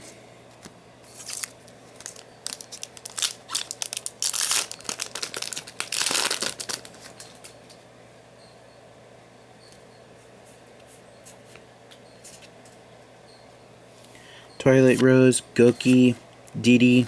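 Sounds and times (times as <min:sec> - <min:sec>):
foil pack ripping: 0:01.1 - 0:07.5
foil pack crinkling: 0:01.1 - 0:07.6.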